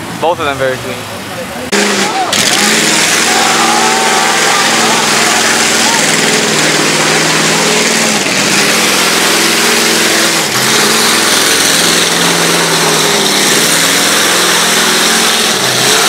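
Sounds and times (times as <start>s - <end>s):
car engine revving: 0.0s - 16.0s.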